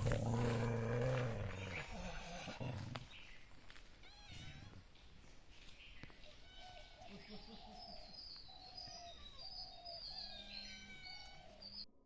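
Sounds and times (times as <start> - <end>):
low animal growl: 0.0 - 3.2
faint high chirps: 4.3 - 11.9.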